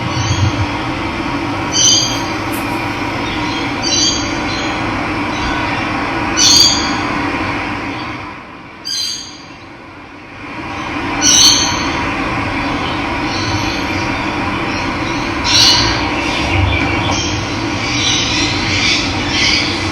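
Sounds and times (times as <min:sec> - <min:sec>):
bird short high call: 0:01.6 - 0:04.2
water rushing: 0:01.6 - 0:04.5.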